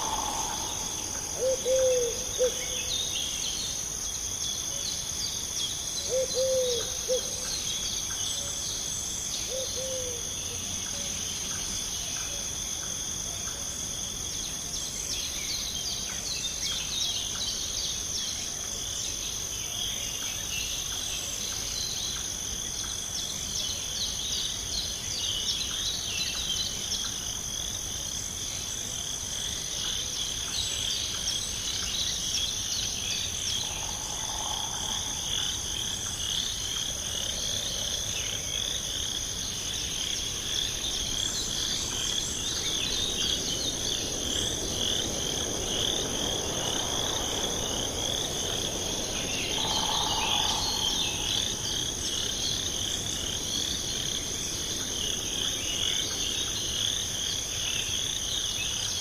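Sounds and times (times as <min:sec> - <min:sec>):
low animal calls: 0:00.0 - 0:02.8, 0:33.5 - 0:36.0, 0:48.5 - 0:52.4
high insect trill: 0:00.0 - 0:59.0.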